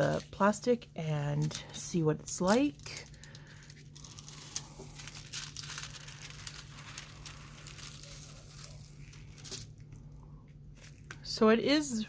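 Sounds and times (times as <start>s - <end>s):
plastic film peeling off: 2.4s - 10.0s.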